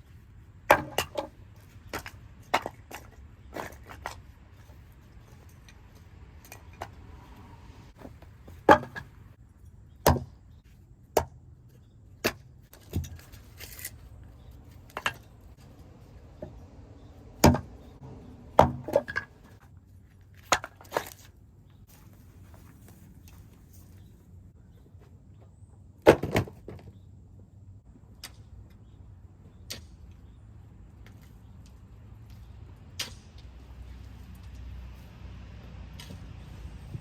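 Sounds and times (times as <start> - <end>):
wood being chopped: 0.7 - 1.3, 8.6 - 9.1, 10.0 - 10.4, 17.4 - 17.8, 18.6 - 19.3.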